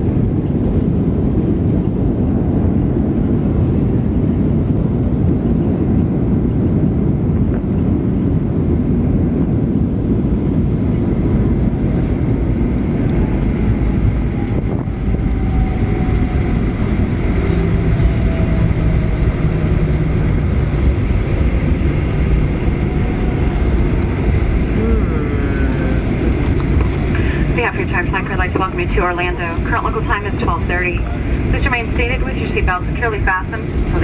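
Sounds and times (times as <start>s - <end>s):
aircraft cabin rumble: 0.0s - 34.0s
engine whine sliding down: 10.4s - 34.0s.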